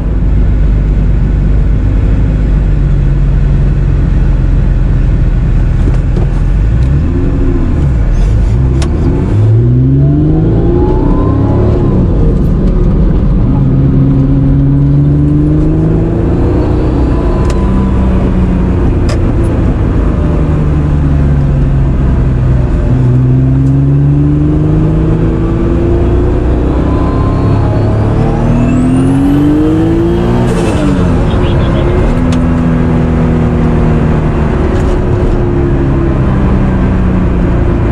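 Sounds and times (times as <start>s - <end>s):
car engine revving through gears: 5.7s - 37.9s.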